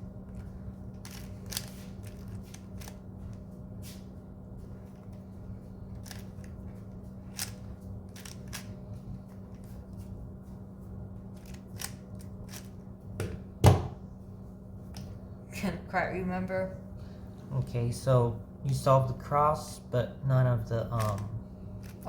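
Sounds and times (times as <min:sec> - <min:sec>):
steady low hum: 0:00.0 - 0:22.0
loud thump: 0:13.2 - 0:14.0.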